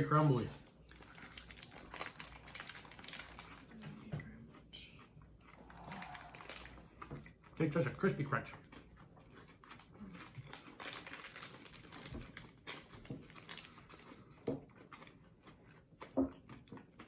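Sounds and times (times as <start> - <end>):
candy wrapper crinkling: 0.0 - 3.8, 5.6 - 7.0, 9.6 - 14.2.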